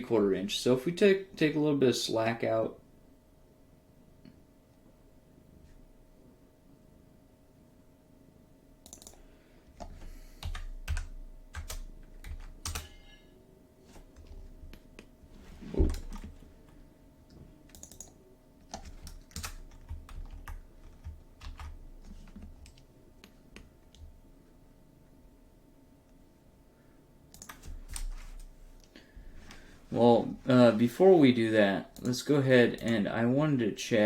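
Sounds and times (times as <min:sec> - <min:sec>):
typing on computer keyboard: 0:08.8 - 0:09.2, 0:09.8 - 0:13.0, 0:17.7 - 0:22.8, 0:27.3 - 0:28.1.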